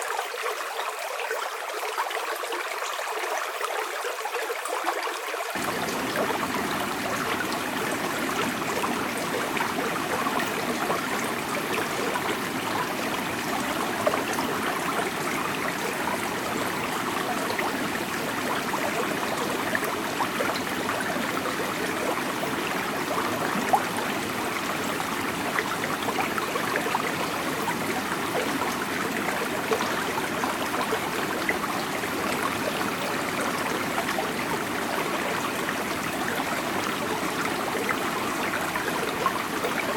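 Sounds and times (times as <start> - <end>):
river water flowing over rocks: 0.0 - 39.9.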